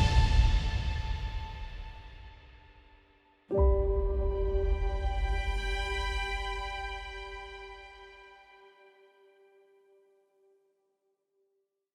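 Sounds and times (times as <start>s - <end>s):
background music with sustained tones: 3.5s - 10.2s.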